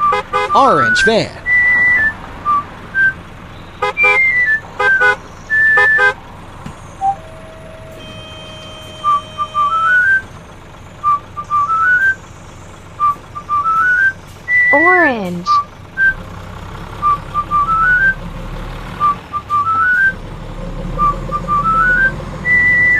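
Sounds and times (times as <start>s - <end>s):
van horn honking: 0.0s - 16.2s
whistled tune: 0.8s - 6.2s, 6.8s - 14.8s, 15.5s - 16.2s, 17.0s - 18.2s, 19.0s - 20.2s, 20.9s - 22.9s.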